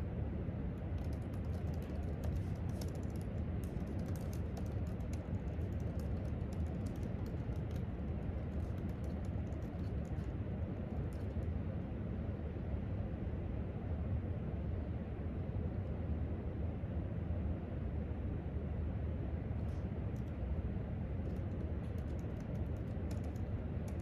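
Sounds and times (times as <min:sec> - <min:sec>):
low room hum: 0:00.0 - 0:24.0
laptop keyboard typing: 0:00.8 - 0:11.5, 0:21.2 - 0:24.0.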